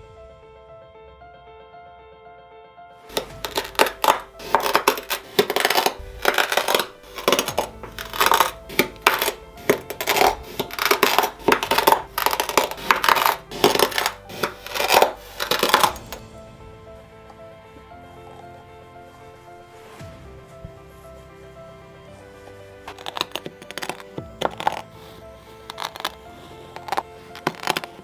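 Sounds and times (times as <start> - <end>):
soft music: 0.0 - 28.0
blade slicing kinetic sand: 3.1 - 16.2.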